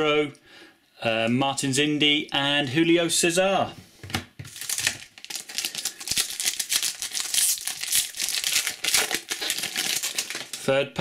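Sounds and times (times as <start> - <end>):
wrapper crinkled and torn open: 4.5 - 10.7.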